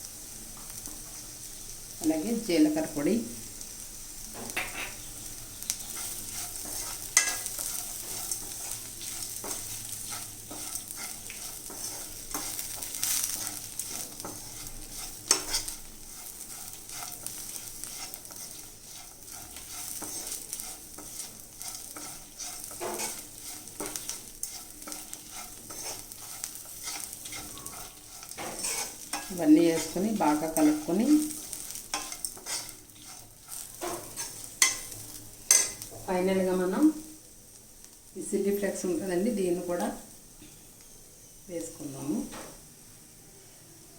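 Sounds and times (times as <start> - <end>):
beans sizzling in a frying pan: 0.0 - 43.9
spatula scraping a pan: 4.4 - 35.9.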